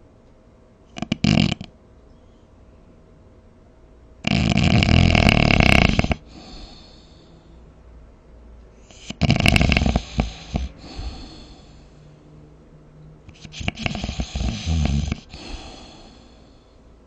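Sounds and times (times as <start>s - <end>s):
person snoring: 0.9s - 1.7s, 4.2s - 7.5s, 8.9s - 12.0s, 13.3s - 16.6s
snort: 0.9s - 1.7s, 4.2s - 7.3s, 8.9s - 11.9s, 13.3s - 16.6s.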